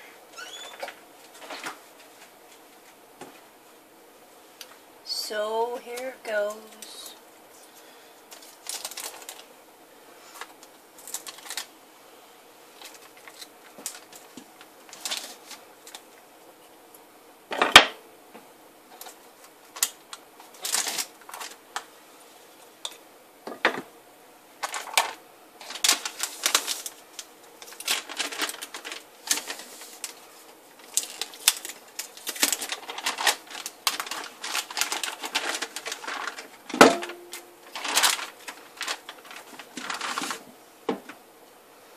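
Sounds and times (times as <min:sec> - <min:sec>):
rustling scrapes: 0:27.7 - 0:31.3, 0:32.2 - 0:36.7, 0:37.6 - 0:40.5.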